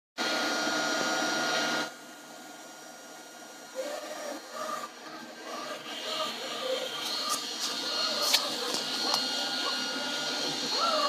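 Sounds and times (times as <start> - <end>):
quiet steady whir: 1.0 - 11.0
robot vacuum motor noise: 3.6 - 11.0.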